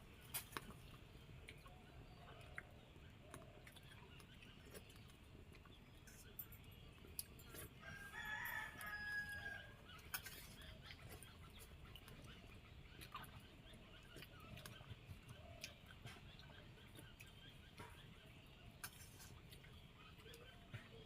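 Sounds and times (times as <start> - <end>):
faint rooster crowing: 7.8 - 9.9.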